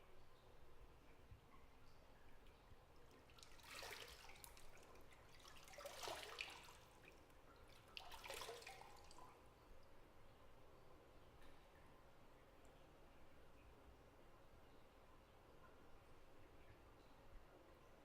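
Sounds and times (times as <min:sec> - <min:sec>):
bathwater splashing and dripping: 0:03.0 - 0:09.3.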